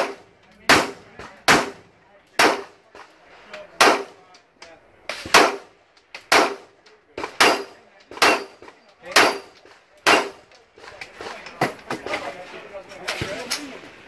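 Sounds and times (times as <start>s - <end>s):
loud gunshots: 0.0s - 2.8s, 3.8s - 4.2s, 5.2s - 5.7s, 6.3s - 10.4s.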